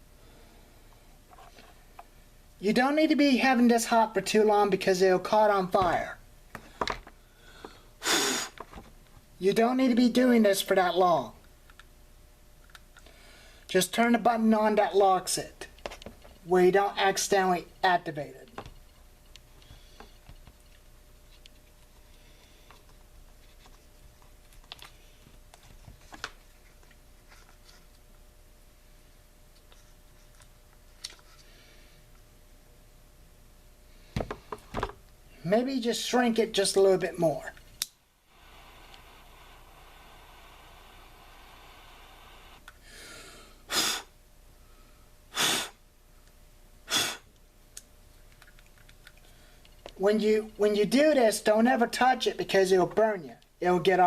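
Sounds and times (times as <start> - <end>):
sharp puffs of breath: 7.3 - 8.6, 38.2 - 45.8, 46.9 - 47.3.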